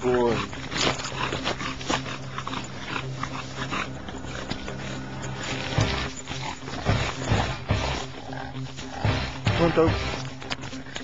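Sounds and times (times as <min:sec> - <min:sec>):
dog panting: 0:00.0 - 0:11.0.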